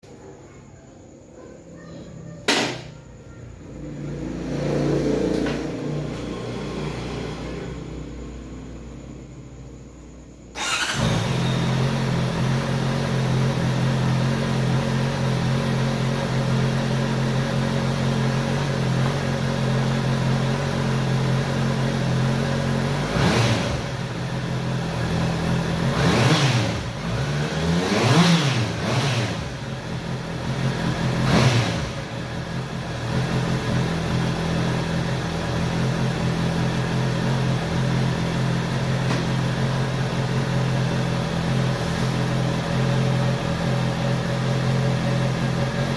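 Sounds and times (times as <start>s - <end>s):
engine revving: 3.6s - 8.8s, 10.6s - 45.9s
engine idling: 29.4s - 45.9s.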